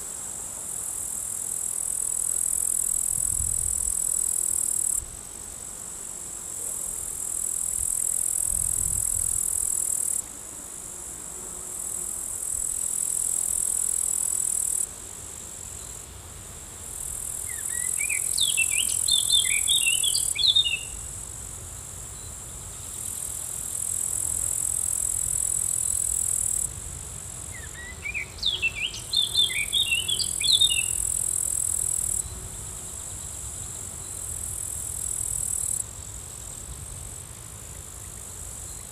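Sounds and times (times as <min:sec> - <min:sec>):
high insect trilling: 0:16.9 - 0:21.1, 0:27.5 - 0:32.3
songbird chirping: 0:17.5 - 0:21.0, 0:27.6 - 0:31.0.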